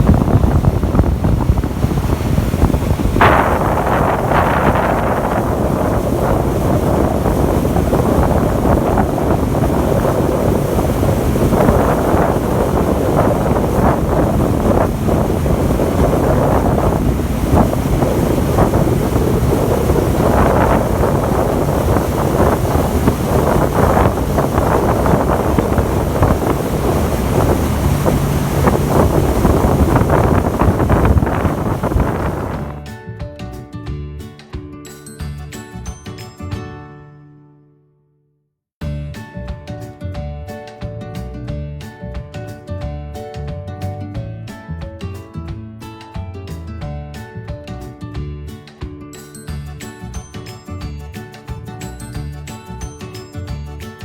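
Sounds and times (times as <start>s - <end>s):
rushing water: 0.0s - 32.8s
wind buffeting microphone: 0.0s - 32.8s.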